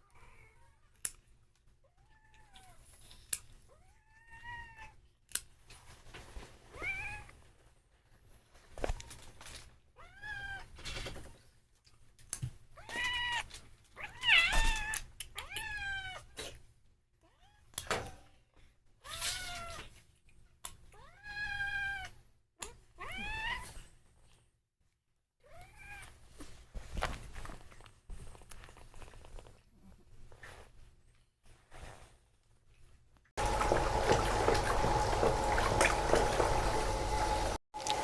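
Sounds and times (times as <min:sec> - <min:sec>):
cat meowing: 0:03.7 - 0:05.0, 0:06.8 - 0:07.3, 0:10.0 - 0:10.7, 0:12.8 - 0:16.3, 0:21.0 - 0:22.1, 0:23.0 - 0:23.8.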